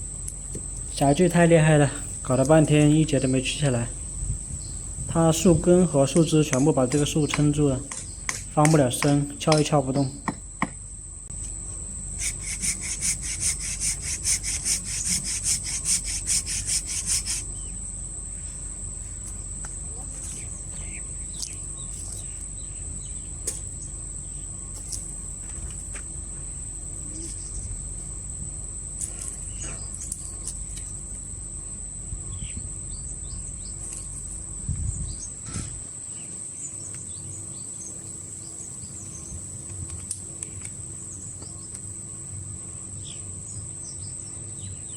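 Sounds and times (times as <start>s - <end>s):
high-pitched insect trill: 0.0s - 44.9s
hand saw cutting wood: 12.2s - 17.4s.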